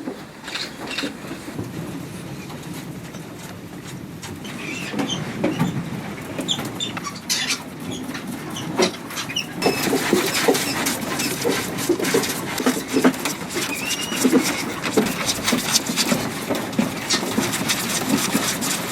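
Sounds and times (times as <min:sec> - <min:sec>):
wire cage rattling: 0:04.2 - 0:18.9
mink squeaking: 0:04.4 - 0:05.7, 0:06.4 - 0:16.2.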